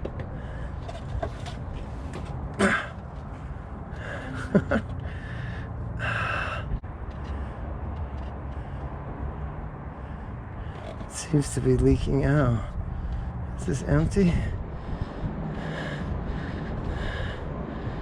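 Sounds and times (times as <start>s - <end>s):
steady low rumble: 0.0s - 18.0s
man breathing heavily: 0.1s - 11.2s, 12.4s - 18.0s
man gasping: 5.0s - 6.8s.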